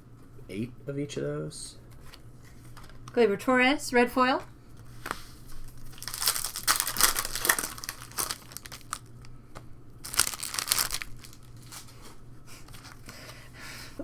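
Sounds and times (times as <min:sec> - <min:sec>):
card pack wrappers crinkling: 0:05.6 - 0:09.4, 0:10.0 - 0:13.2.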